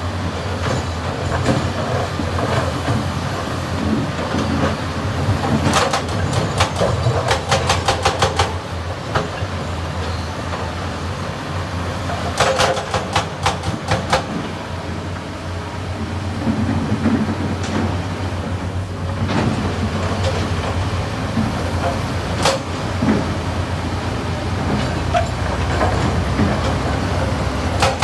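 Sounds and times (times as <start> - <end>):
diesel engine running: 13.3 - 28.0.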